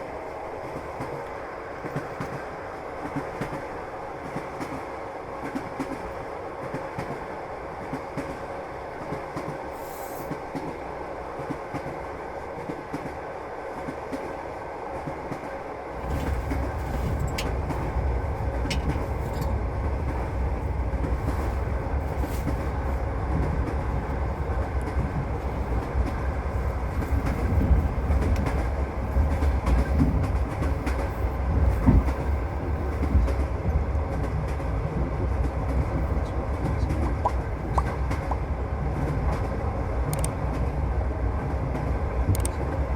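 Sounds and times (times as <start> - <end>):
rail clicks: 0.0 - 42.9
train wheels on rails: 0.0 - 42.9.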